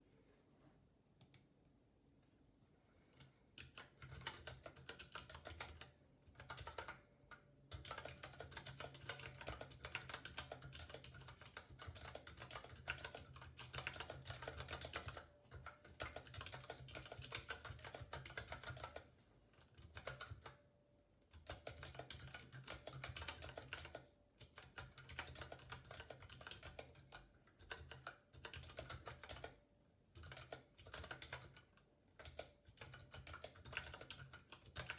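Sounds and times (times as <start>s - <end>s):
mechanical keyboard typing: 3.1s - 20.6s, 21.3s - 34.9s.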